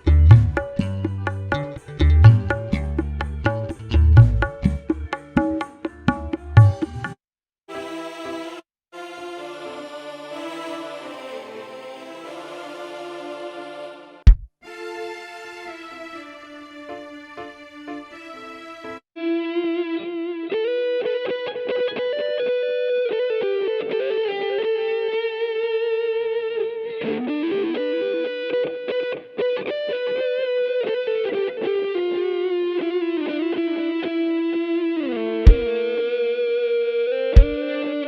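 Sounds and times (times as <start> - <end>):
distorted electric guitar melody: 0.0 - 6.8, 25.8 - 38.0
loud deep thump: 14.3 - 14.5, 35.5 - 35.7.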